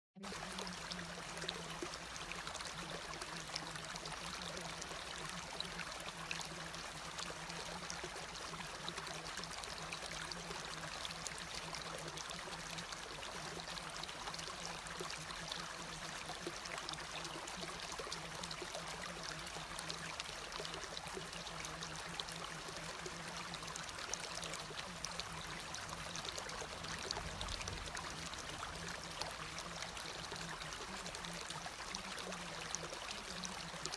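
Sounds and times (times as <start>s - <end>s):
steady rain falling: 22.9s - 32.1s.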